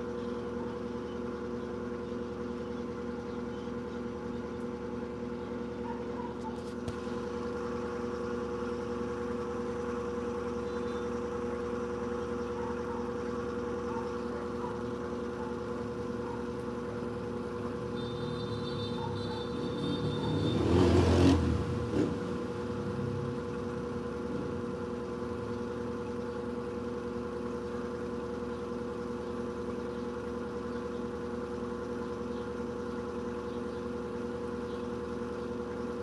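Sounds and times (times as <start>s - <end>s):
washing machine spinning: 7.1s - 20.8s, 22.3s - 36.0s.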